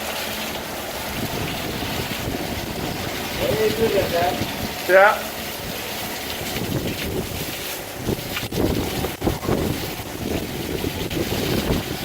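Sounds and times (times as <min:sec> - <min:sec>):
wind gusting across microphone: 0:00.6 - 0:12.0.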